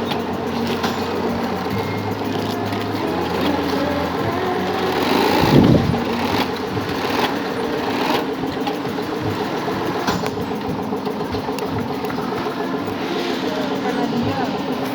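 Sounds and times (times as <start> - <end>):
sewing machine running: 0.0 - 14.9.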